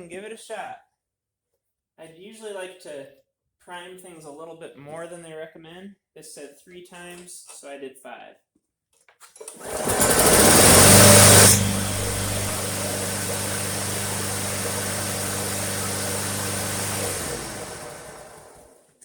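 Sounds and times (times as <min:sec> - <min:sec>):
engine winding down: 0:09.5 - 0:18.8
lawnmower engine running: 0:09.5 - 0:18.8.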